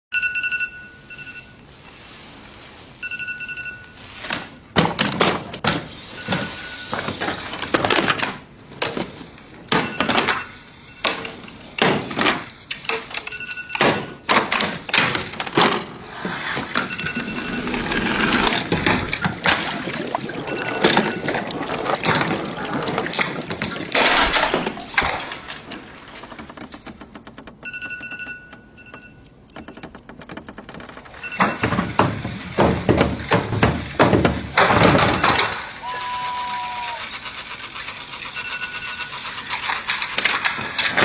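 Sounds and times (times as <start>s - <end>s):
phone alarm beeping: 0.1s - 2.0s, 3.0s - 4.3s, 6.0s - 7.5s, 9.7s - 11.6s, 13.2s - 14.3s, 16.7s - 21.8s, 27.5s - 30.1s, 31.1s - 32.0s, 38.2s - 39.3s
loud sharp thuds and knocks: 29.7s - 35.5s.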